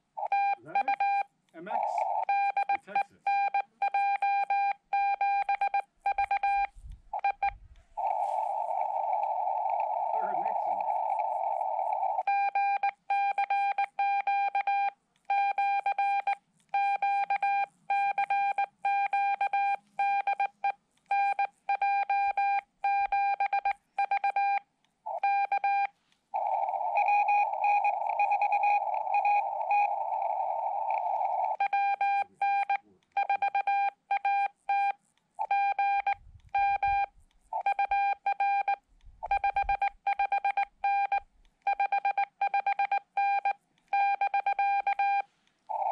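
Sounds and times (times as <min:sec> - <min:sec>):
receiver hiss: 0:00.0 - 0:03.2, 0:06.1 - 0:13.1, 0:25.9 - 0:31.6
morse code tone: 0:01.8 - 0:20.5, 0:25.2 - 0:45.9.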